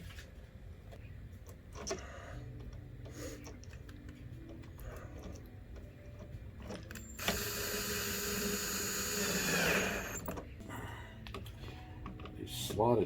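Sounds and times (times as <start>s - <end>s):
steady whirring: 6.9s - 10.4s.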